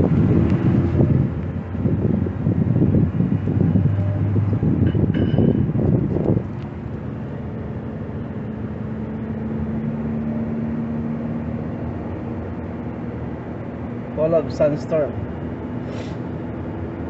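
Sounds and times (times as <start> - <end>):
wind buffeting microphone: 0.0 - 8.9.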